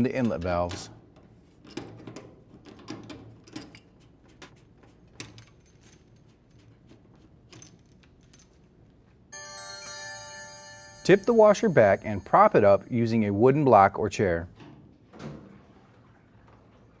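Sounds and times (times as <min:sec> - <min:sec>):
short musical chime: 0:09.4 - 0:13.6.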